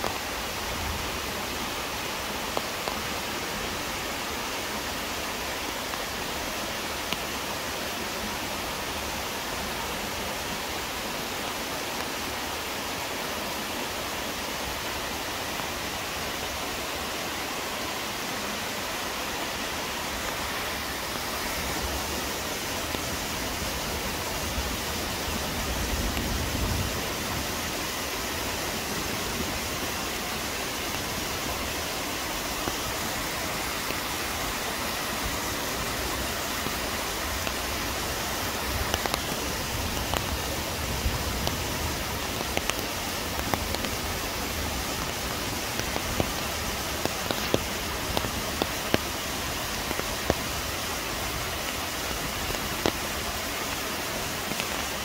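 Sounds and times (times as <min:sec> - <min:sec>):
waterfall rushing: 0:00.0 - 0:55.0
raindrops ticking: 0:27.8 - 0:55.0.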